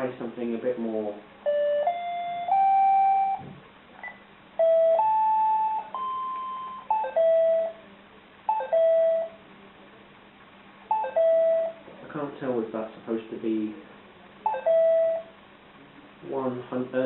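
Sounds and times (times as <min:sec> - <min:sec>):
calculator beeping notes: 0:04.6 - 0:07.8, 0:08.5 - 0:09.4, 0:10.9 - 0:11.8, 0:14.5 - 0:15.4.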